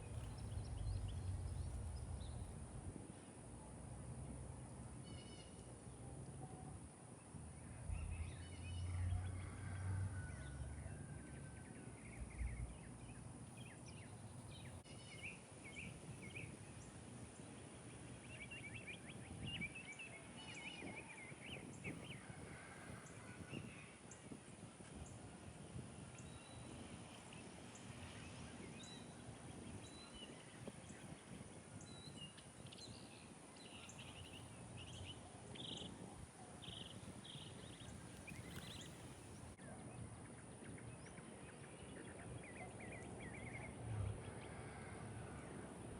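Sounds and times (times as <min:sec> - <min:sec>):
low rumble: 0:00.0 - 0:02.9
songbirds chirping: 0:00.0 - 0:45.9.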